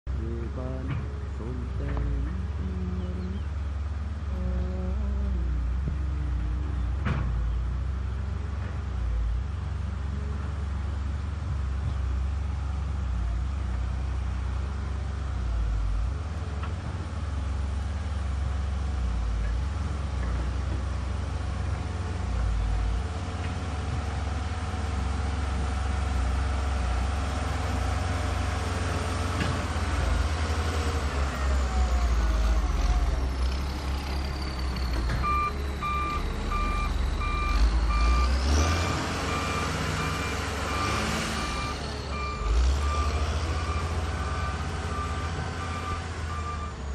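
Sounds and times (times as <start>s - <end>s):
diesel machine engine rumbling: 0.1s - 46.9s
reversing alarm beeping: 35.0s - 46.9s.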